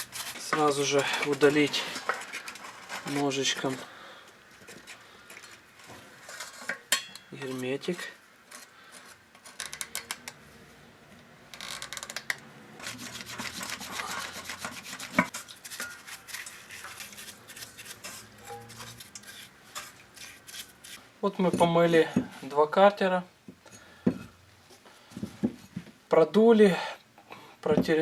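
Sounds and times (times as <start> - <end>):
knife scraping sealant off metal: 12.8 - 21.0.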